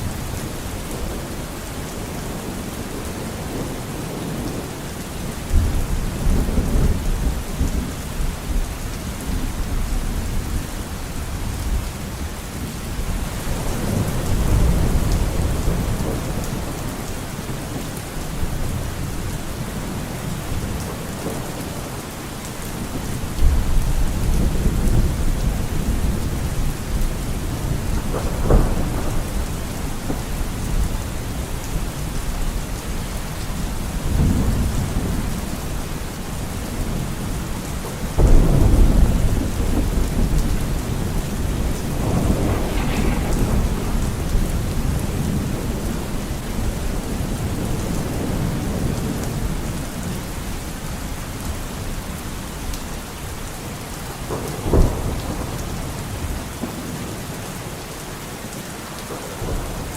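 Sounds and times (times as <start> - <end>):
steady rain hissing: 0.0 - 59.9
thunder rumbling: 23.2 - 32.4, 38.1 - 49.9
sharp thunder crack: 38.2 - 45.9.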